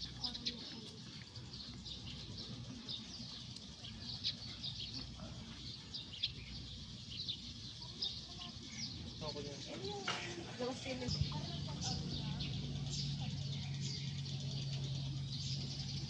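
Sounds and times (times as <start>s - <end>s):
small birds chirping: 0.0s - 16.0s
low rumble: 11.1s - 16.0s.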